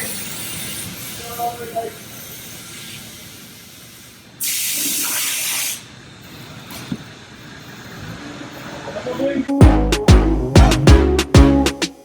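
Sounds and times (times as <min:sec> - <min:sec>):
pressurised air hissing: 0:00.0 - 0:06.6.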